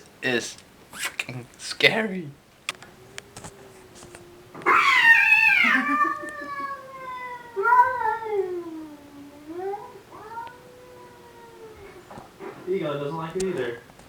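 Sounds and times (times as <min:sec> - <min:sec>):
cat yowling from computer: 0:02.8 - 0:12.6.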